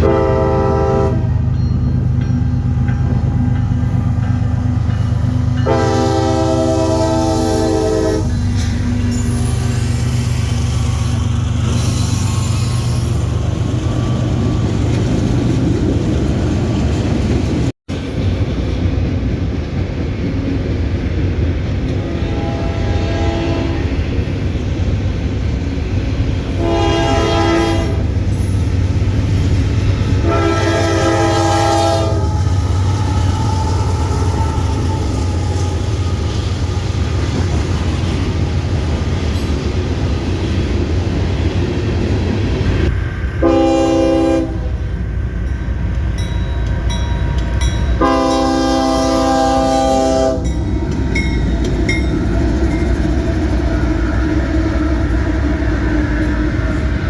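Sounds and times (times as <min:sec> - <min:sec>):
train horn blasts: 0:00.0 - 0:01.5, 0:05.6 - 0:08.4, 0:22.0 - 0:24.1, 0:26.5 - 0:28.1, 0:30.1 - 0:37.3, 0:43.4 - 0:44.9, 0:48.0 - 0:50.6
low rumble of passing train: 0:00.0 - 0:57.0.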